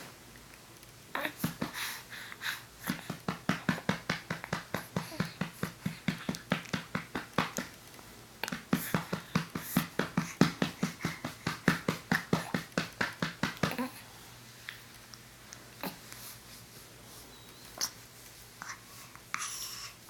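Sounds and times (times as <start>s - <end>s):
hand patting baby's back: 2.9s - 7.7s, 8.5s - 13.9s.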